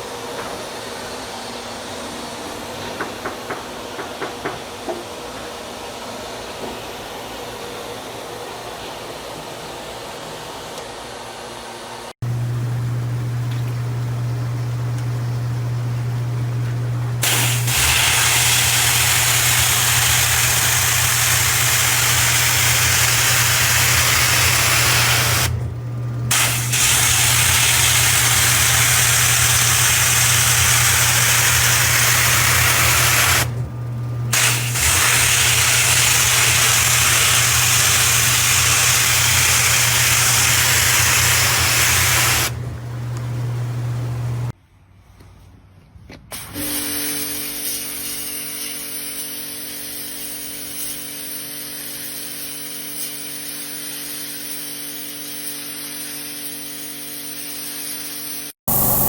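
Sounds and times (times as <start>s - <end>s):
pressure washer humming: 12.2s - 44.6s, 58.7s - 59.0s
high-pressure spray hissing: 17.2s - 25.5s, 26.3s - 33.5s, 34.3s - 42.6s.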